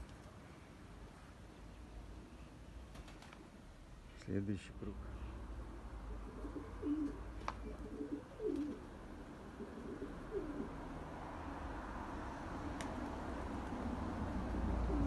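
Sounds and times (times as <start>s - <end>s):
pigeons cooing: 6.1s - 10.8s, 14.8s - 15.0s.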